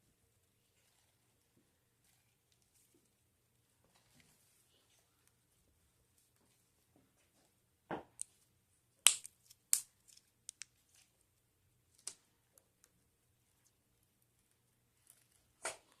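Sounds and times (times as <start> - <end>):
slime popping and clicking: 9.0 - 9.9.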